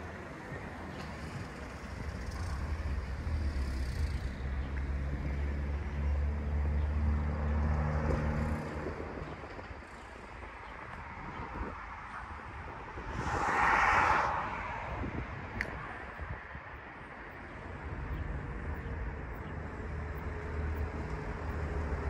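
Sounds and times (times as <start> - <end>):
vehicle engine humming: 0.1 - 22.0.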